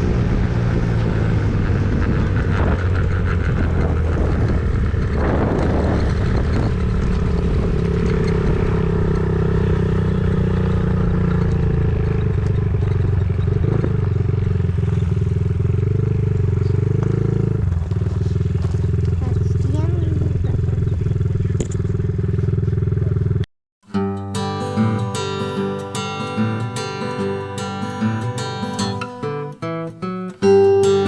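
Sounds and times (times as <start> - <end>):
engine droning: 0.0 - 23.5.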